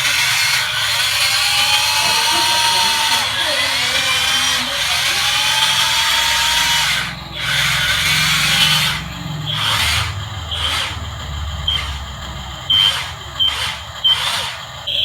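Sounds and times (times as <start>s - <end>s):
small electric motor whirring: 0.0s - 15.0s.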